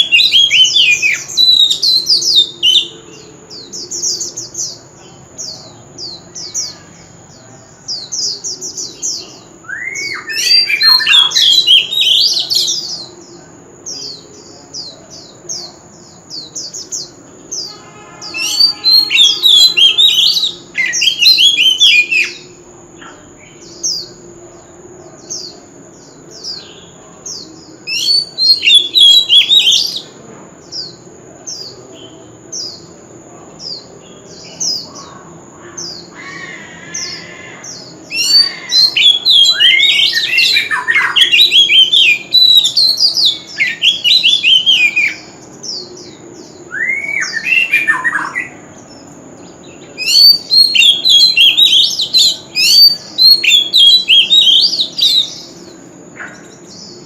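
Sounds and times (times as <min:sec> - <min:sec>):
bird song phrases: 0:00.0 - 0:57.0
bird whistled notes: 0:17.6 - 0:22.5, 0:46.7 - 0:48.5.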